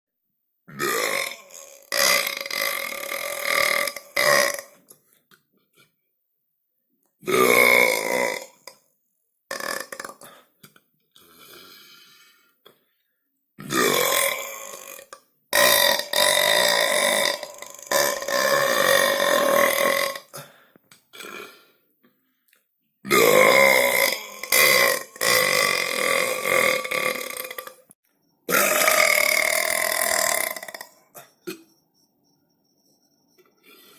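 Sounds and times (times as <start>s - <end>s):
person belching: 0.7s - 4.8s, 7.2s - 8.8s, 9.5s - 10.4s, 13.6s - 21.7s, 23.0s - 27.9s, 28.5s - 31.7s.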